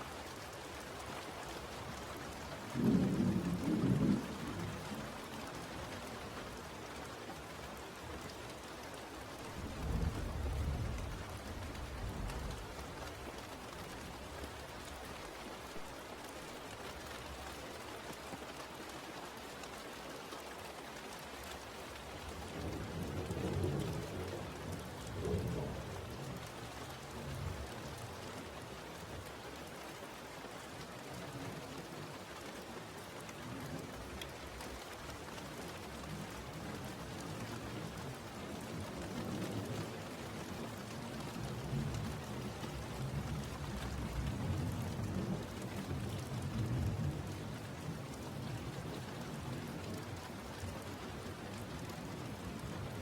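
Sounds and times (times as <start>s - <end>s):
steady rain: 0.0s - 53.0s
thunder rumbling: 2.7s - 4.9s, 9.5s - 12.8s.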